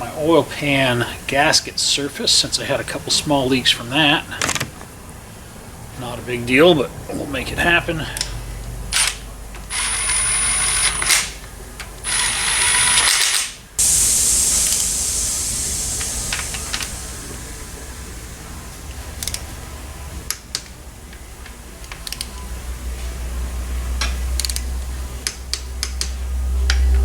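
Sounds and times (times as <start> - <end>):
air tool whining over hiss: 9.7 - 11.4, 12.0 - 20.3
loud air hiss: 12.1 - 20.3.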